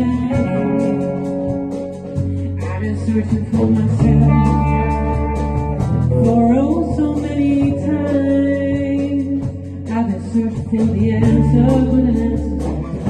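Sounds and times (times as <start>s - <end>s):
sliding guitar notes: 0.0s - 9.8s
instrumental band music: 0.0s - 13.0s.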